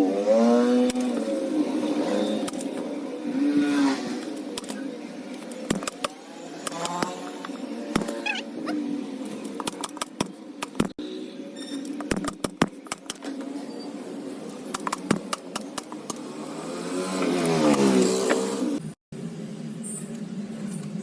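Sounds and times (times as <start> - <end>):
sharp clicks and taps: 14.7 - 16.2.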